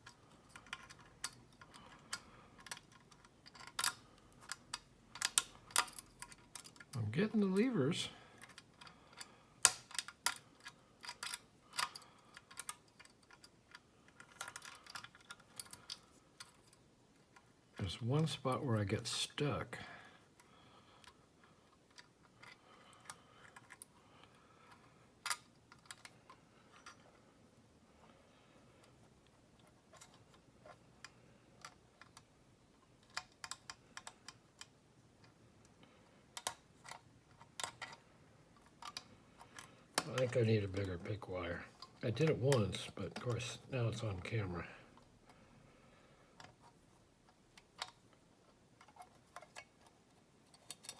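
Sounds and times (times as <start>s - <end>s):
metallic clicks of lock picking: 0.0s - 7.0s, 8.4s - 16.8s, 24.7s - 26.2s, 33.0s - 35.4s, 36.4s - 38.0s.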